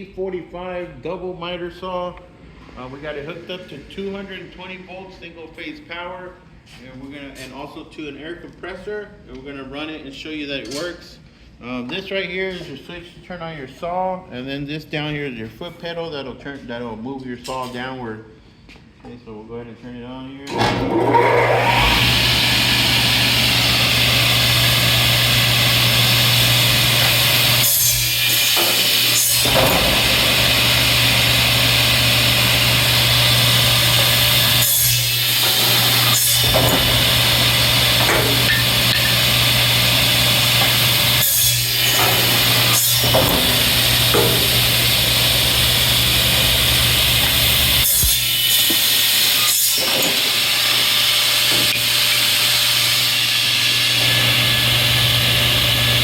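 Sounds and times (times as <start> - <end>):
miter saw running with hum: 20.9 - 56.0.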